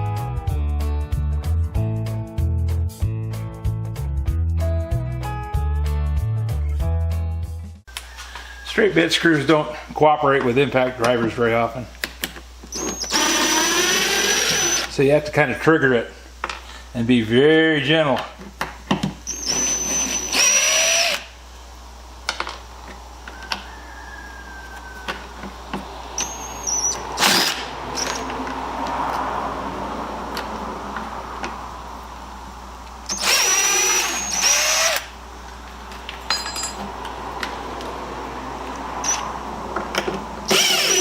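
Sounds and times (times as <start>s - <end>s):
impact driver motor whine: 12.7s - 14.9s, 26.2s - 28.2s, 33.1s - 35.1s, 40.5s - 41.0s.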